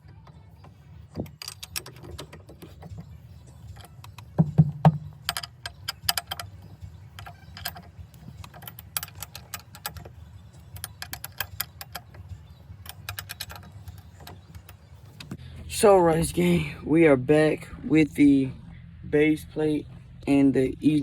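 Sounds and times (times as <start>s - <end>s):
low steady hum: 0.0s - 21.0s
metallic clicks of hand tools: 1.2s - 3.1s, 3.7s - 15.4s.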